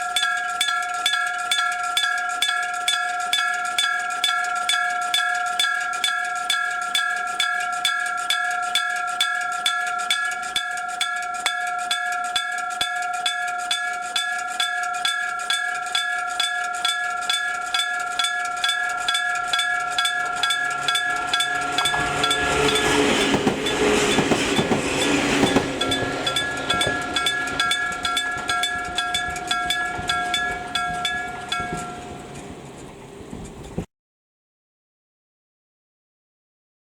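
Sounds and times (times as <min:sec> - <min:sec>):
level crossing bell ringing: 0:00.0 - 0:32.8
train rumbling past: 0:17.3 - 0:33.9.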